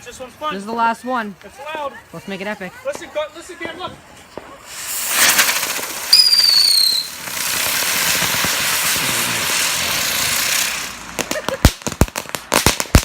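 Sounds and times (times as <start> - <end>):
firework spraying hiss: 2.8 - 13.0
firework shrill whistle: 4.6 - 11.4.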